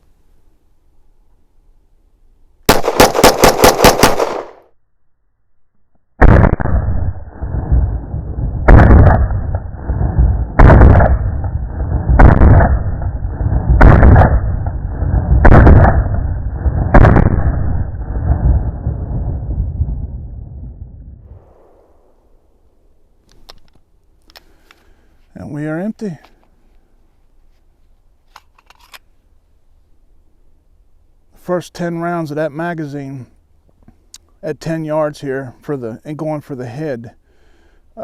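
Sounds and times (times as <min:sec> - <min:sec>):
booming gunshots with low rumble: 0:02.7 - 0:04.6, 0:06.2 - 0:22.5
pistol rapid fire: 0:02.7 - 0:04.6, 0:08.7 - 0:09.6, 0:10.6 - 0:11.5, 0:12.1 - 0:14.7, 0:15.4 - 0:17.7.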